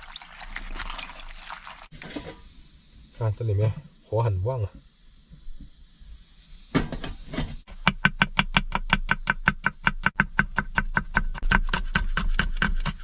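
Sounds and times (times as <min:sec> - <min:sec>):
knife chopping on cutting board: 0:07.9 - 0:13.0.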